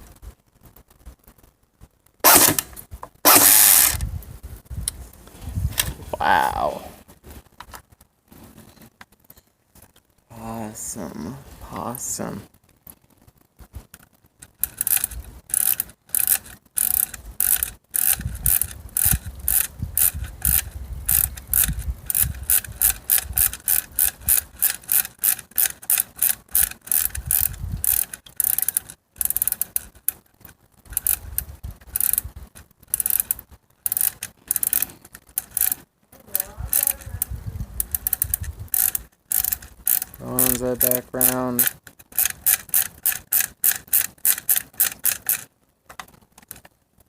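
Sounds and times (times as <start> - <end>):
rubbing and handling noise: 0.0 - 10.2, 11.0 - 47.0
toy air rifle ratcheting clicks: 2.2 - 4.0, 14.5 - 30.2, 30.9 - 32.3, 32.9 - 45.5.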